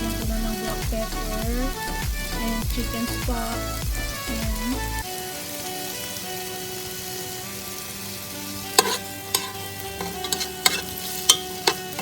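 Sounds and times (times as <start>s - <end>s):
chicken sizzling in a pan: 0.0s - 12.0s
utensil scraping a pan: 8.7s - 12.0s.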